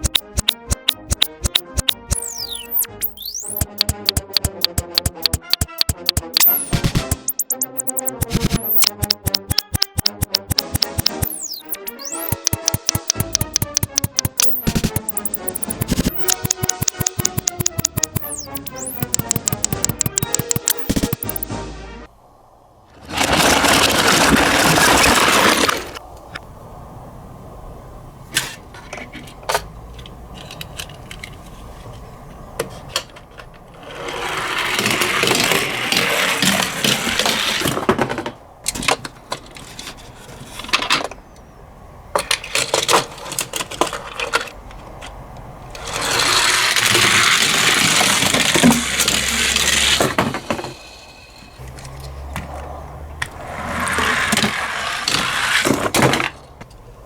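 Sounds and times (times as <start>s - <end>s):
small clicks and knocks: 0.0s - 21.5s
toy cars rattling down track: 23.1s - 26.0s, 33.8s - 38.1s, 45.8s - 51.1s.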